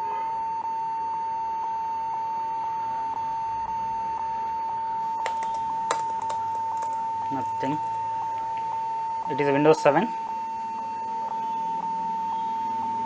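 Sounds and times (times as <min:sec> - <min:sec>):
laptop beeping steady high tone: 0:00.0 - 0:13.0
key clicks: 0:05.2 - 0:07.4.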